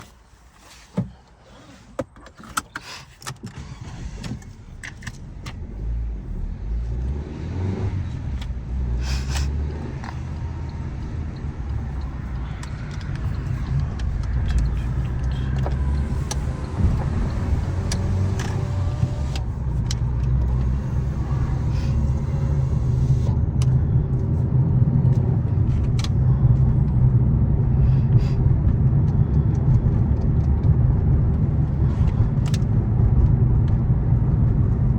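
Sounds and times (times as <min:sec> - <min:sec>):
car engine starting and running: 0:00.0 - 0:34.9
sharp clicks: 0:09.2 - 0:23.8.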